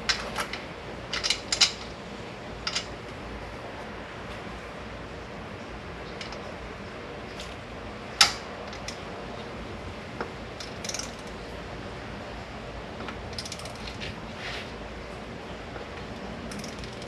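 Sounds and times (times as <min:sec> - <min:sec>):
ratchet wrench clicking: 0:00.1 - 0:01.9, 0:10.6 - 0:11.3, 0:13.3 - 0:14.0, 0:16.5 - 0:17.0.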